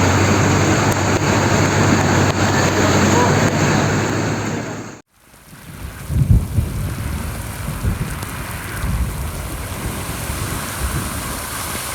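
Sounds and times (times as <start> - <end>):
low rumble: 0.0 - 5.0
heavy rain pouring: 0.0 - 11.9.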